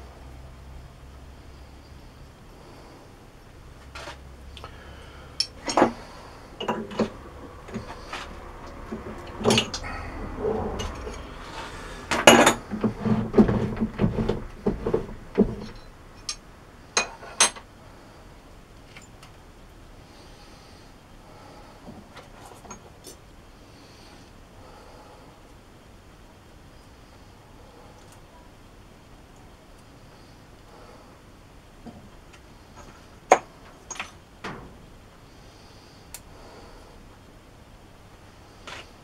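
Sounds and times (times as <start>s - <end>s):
metal tools clinking: 5.4s - 6.0s, 9.4s - 10.0s, 10.8s - 12.7s, 15.6s - 16.4s.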